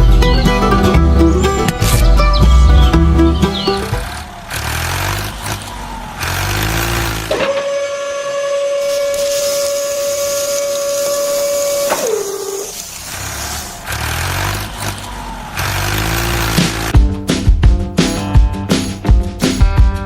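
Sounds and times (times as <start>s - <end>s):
small motor whining: 3.4s - 16.9s.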